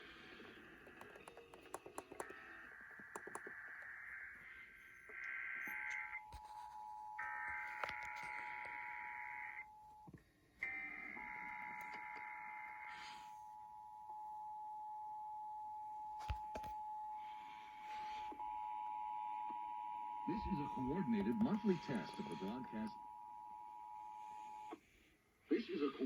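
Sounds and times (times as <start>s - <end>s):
warbling data bursts: 0.6s - 9.8s
sharp clicks: 0.9s - 4.0s.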